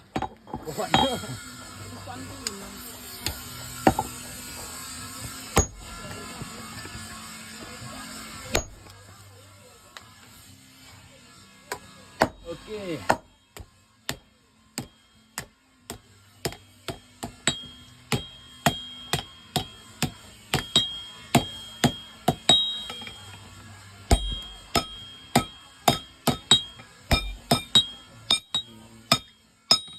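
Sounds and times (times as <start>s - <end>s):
hammer striking metal on anvil: 0.2s - 1.3s, 5.6s - 6.0s, 8.5s - 8.8s, 12.2s - 29.9s.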